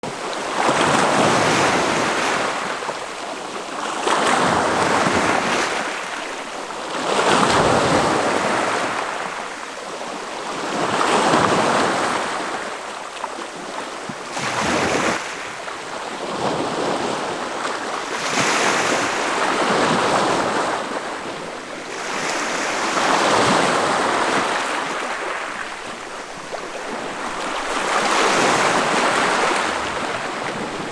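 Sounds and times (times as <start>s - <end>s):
ocean waves breaking: 14.3s - 30.9s.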